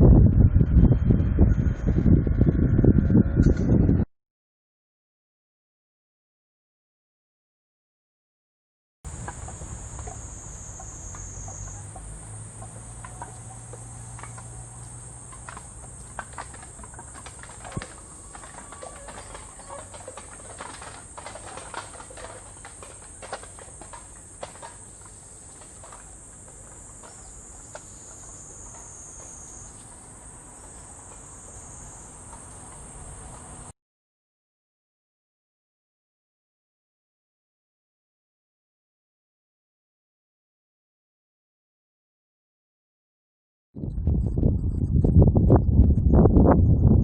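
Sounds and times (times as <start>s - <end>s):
high-pitched insect chorus: 9.1s - 33.7s
light clicks and rustles: 12.5s - 30.0s.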